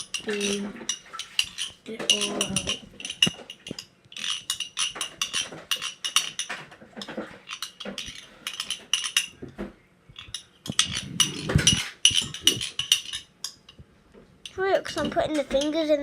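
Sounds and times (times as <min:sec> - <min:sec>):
metal spoon scraping a container: 0:10.3 - 0:13.3.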